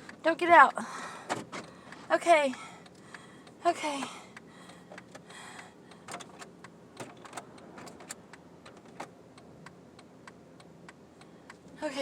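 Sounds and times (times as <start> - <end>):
light clicks and ticks: 0.0 - 12.0.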